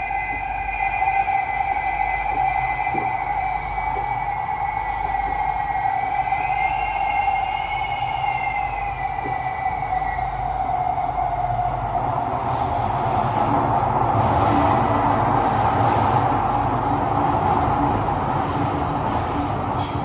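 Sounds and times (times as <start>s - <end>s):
high wheel squeal: 0.0s - 11.7s
train wheels rumbling on rail: 1.8s - 20.0s.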